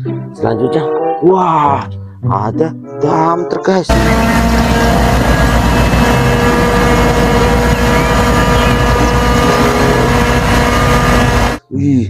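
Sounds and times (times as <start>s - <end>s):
motor drone: 3.9s - 11.6s
whining tones: 3.9s - 11.6s.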